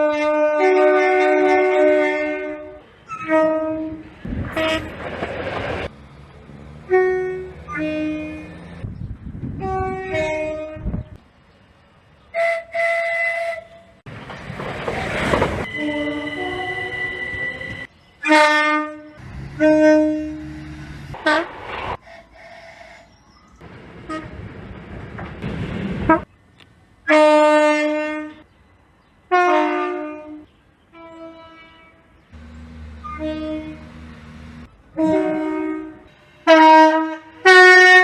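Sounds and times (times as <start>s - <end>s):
two-tone train horn blasts: 0.0s - 5.0s, 6.9s - 8.8s, 9.6s - 11.1s, 15.7s - 21.5s, 24.1s - 24.4s, 27.1s - 28.4s, 29.3s - 38.0s
trains rushing past: 4.0s - 8.9s, 14.0s - 18.2s, 19.0s - 26.3s, 32.4s - 37.4s.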